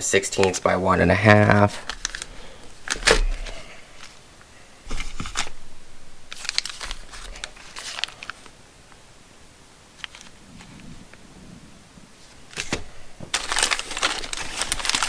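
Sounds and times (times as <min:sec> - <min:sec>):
plastic packaging crinkling: 0:01.5 - 0:04.2, 0:04.9 - 0:08.6, 0:10.0 - 0:10.9, 0:12.2 - 0:15.0
metal hardware clicking: 0:01.9 - 0:03.5.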